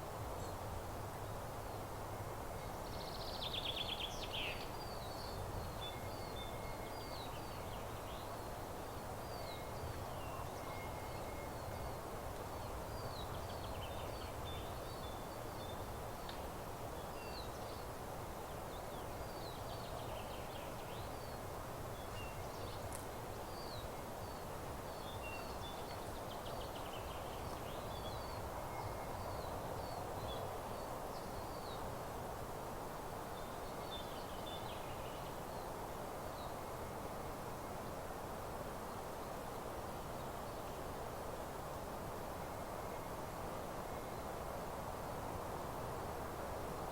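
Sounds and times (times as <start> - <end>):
songbirds chirping: 0.0 - 45.8
low background hiss: 0.0 - 46.9.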